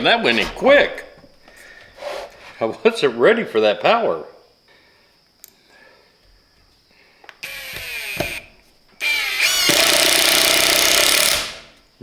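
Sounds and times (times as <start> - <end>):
impact driver hammering screw: 9.0 - 11.6.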